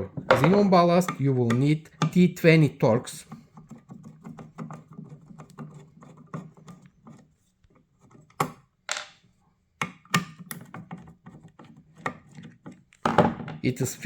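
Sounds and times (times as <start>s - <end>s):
screwdriver ticking and scraping: 0.4s - 8.5s.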